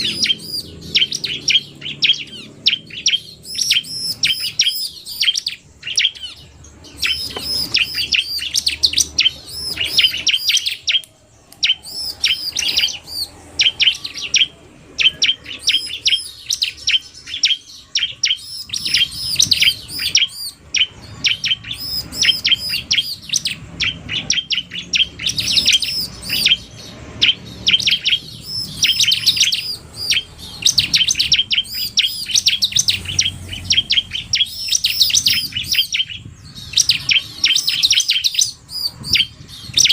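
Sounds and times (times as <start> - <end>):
birds chattering chirps: 0.0 - 39.9.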